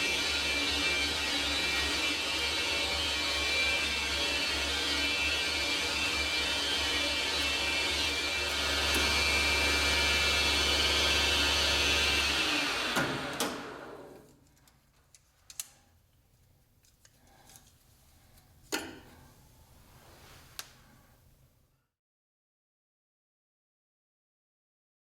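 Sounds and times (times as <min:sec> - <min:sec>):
metal lathe spinning down: 0:00.0 - 0:14.2.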